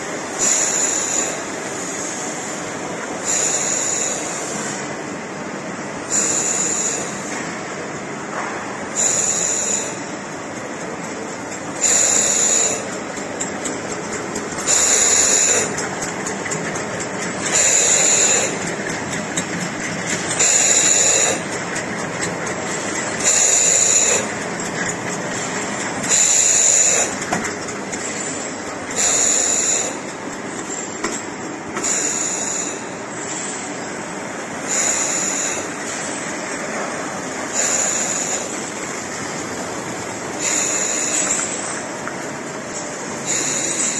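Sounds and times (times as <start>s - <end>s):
machine mechanical rattle: 8.3s - 33.6s, 37.5s - 43.9s.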